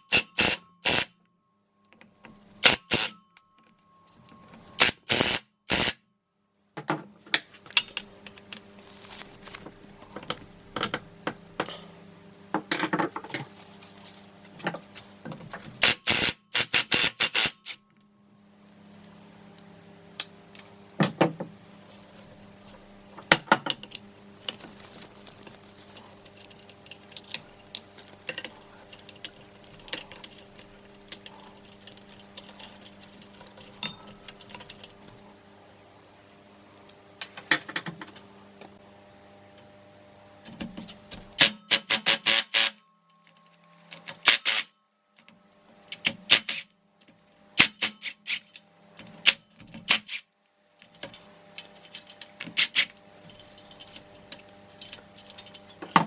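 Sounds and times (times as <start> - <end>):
steady background hum: 0.0 - 56.0
tools and metal parts clicking: 25.9 - 35.2, 47.7 - 48.6, 51.0 - 56.0.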